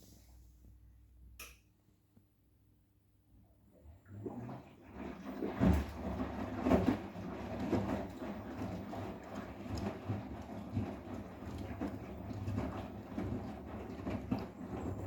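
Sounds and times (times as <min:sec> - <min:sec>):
washing machine drum humming: 0:03.8 - 0:15.0
dull thuds in washing machine: 0:05.0 - 0:15.0.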